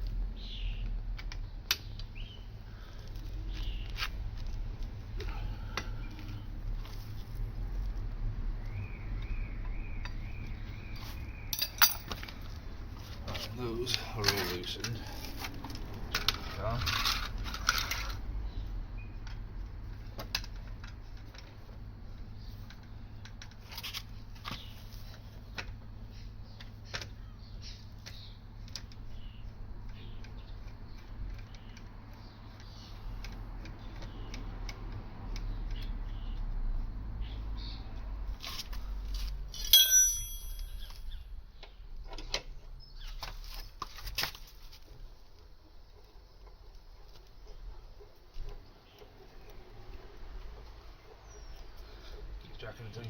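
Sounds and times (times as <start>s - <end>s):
metal clang: 39.6s - 41.0s.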